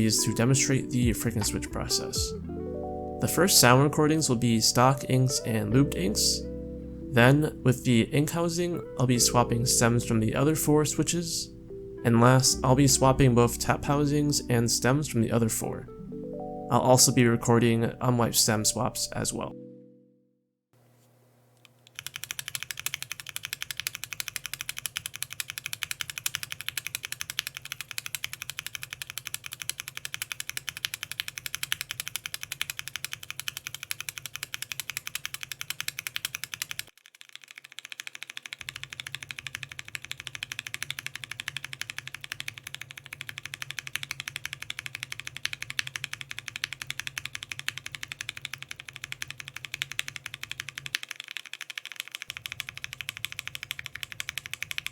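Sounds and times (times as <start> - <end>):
mechanical keyboard typing: 21.8 - 54.9.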